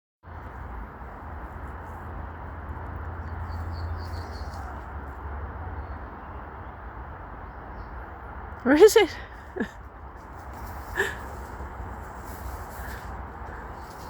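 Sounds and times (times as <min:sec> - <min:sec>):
small bird chirping: 0:03.2 - 0:04.8.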